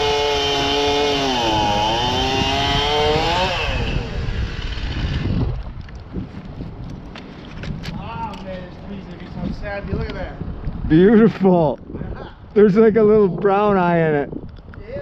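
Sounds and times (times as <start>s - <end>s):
small engine running: 0.0s - 5.4s
rough rumbling noise: 0.0s - 11.4s.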